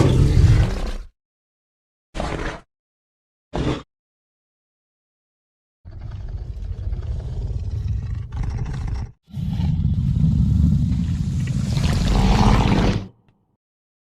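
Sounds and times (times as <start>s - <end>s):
deep grating dinosaur growl: 5.9s - 13.3s.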